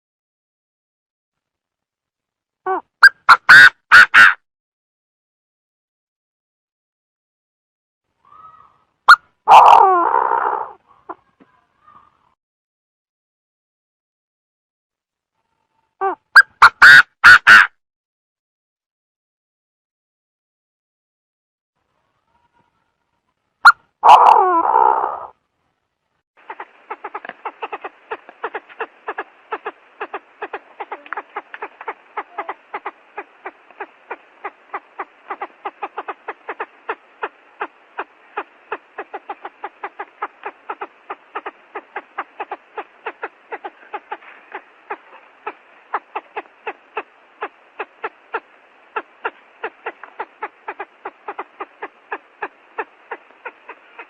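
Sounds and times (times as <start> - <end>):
quail calling: 2.7 - 4.4, 8.3 - 11.2, 16.0 - 17.7, 23.6 - 25.3, 26.4 - 54.0.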